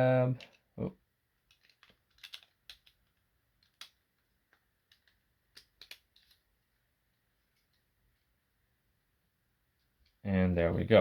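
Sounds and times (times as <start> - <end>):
plastic toy parts clicking: 1.4 - 6.5.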